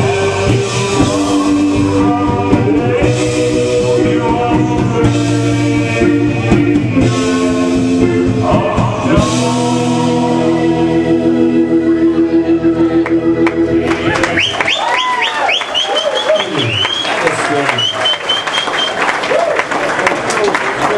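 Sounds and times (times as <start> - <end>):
person singing: 0.0 - 14.2
live band playing: 0.0 - 19.0.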